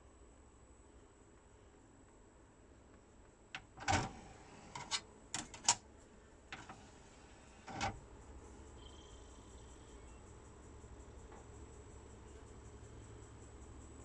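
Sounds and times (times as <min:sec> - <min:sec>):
dvd player tray clicks and clunks: 0:03.6 - 0:05.8, 0:06.5 - 0:06.9, 0:07.6 - 0:08.0.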